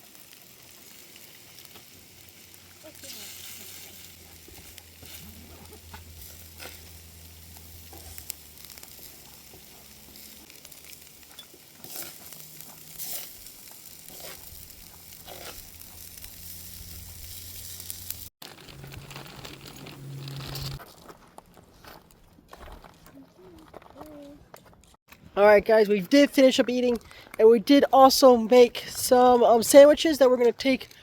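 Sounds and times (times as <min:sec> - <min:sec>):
food sizzling in a frying pan: 0:00.0 - 0:18.3.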